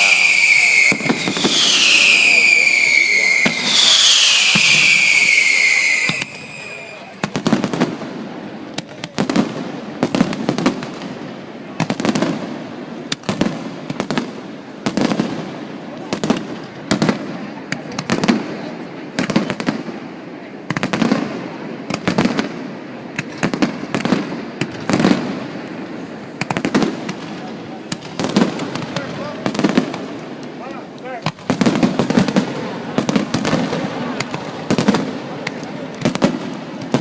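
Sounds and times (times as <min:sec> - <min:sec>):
fireworks bangs echoing: 0:00.0 - 0:37.0.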